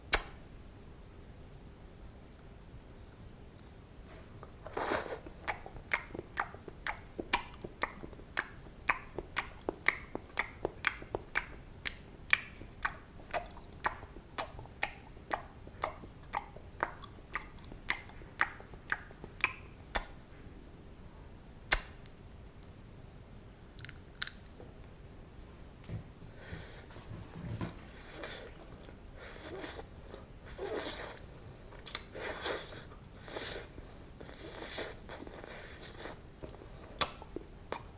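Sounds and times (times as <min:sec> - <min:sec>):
gum chewing wet clicks: 0:05.4 - 0:20.2, 0:34.1 - 0:37.9.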